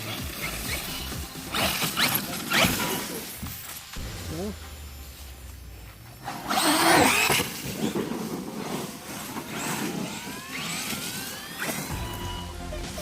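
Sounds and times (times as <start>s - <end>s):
rc truck electric motor whine: 0.0s - 13.0s
loud rushing noise burst: 3.8s - 13.0s.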